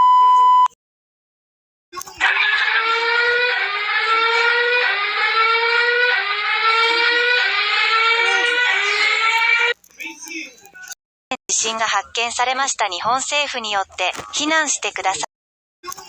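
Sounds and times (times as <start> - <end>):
synthetic alert siren gliding upward: 2.2 - 9.8.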